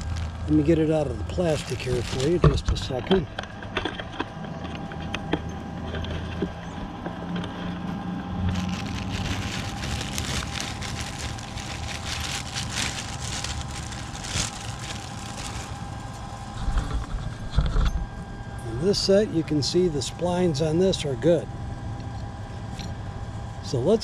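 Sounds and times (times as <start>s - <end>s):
plastic packaging crinkling: 0.0s - 3.0s, 8.4s - 16.6s
steady low hum: 0.0s - 24.0s.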